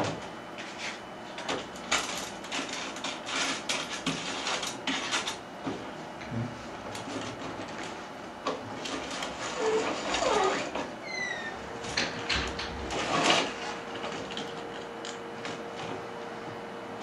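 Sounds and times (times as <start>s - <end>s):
curtain track parts clicking and rattling: 1.4s - 5.4s, 6.9s - 15.9s.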